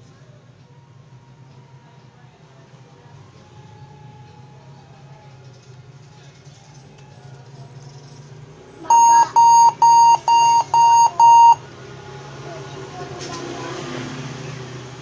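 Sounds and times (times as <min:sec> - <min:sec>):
laptop high-pitched beeps: 0:08.9 - 0:11.6.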